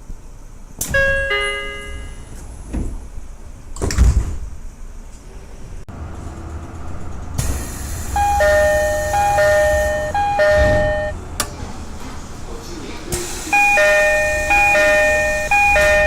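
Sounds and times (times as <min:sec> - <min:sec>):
sliding doors closing thud: 0:00.8 - 0:04.6, 0:06.0 - 0:16.0
bell-like door chime: 0:00.9 - 0:02.3, 0:08.2 - 0:11.2, 0:13.6 - 0:16.0
two-tone high-low door chime: 0:00.9 - 0:02.3, 0:08.2 - 0:11.2, 0:13.6 - 0:16.0.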